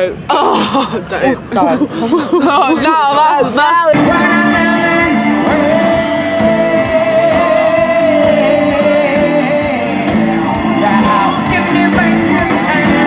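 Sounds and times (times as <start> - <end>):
music with singing voice: 3.9 - 13.0.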